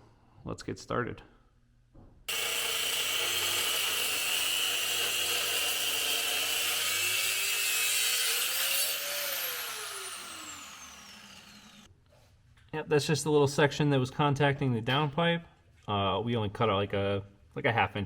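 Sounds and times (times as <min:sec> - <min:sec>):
power cutting tool whine: 0:02.3 - 0:11.9.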